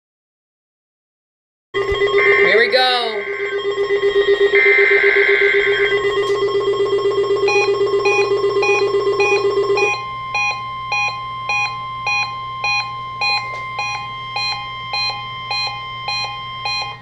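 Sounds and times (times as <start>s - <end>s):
electronic alarm beeping: 1.8s - 17.0s
fast-pulsing low alarm tone: 1.8s - 17.0s
steady alarm tone: 1.8s - 17.0s.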